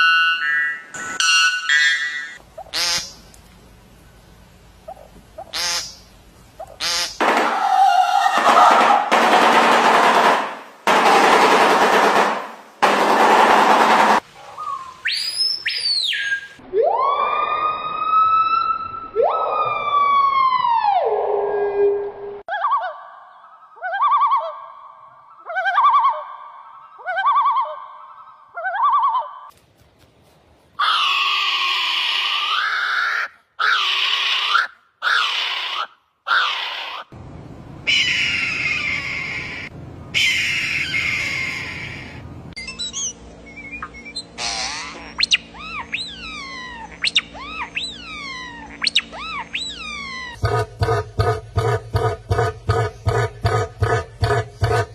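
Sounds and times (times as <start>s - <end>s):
bird mimicking a siren: 0.0s - 3.2s, 14.5s - 29.5s, 37.9s - 51.0s
bird calling loudly: 4.9s - 9.0s, 14.4s - 16.6s, 30.8s - 37.1s, 37.9s - 54.9s.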